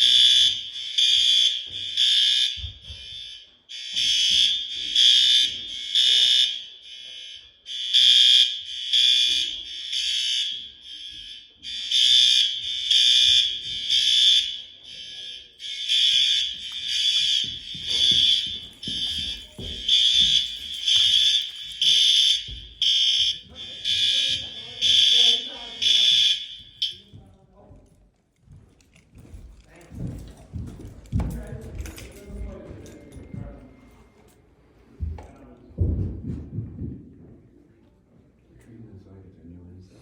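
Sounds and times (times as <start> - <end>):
fire alarm blasts: 0.0 - 27.2.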